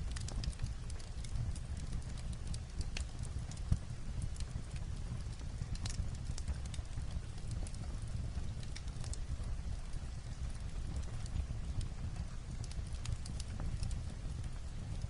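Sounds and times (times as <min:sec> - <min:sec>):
fireplace crackling and popping: 0:00.0 - 0:15.0
light rain on a roof: 0:00.0 - 0:15.0.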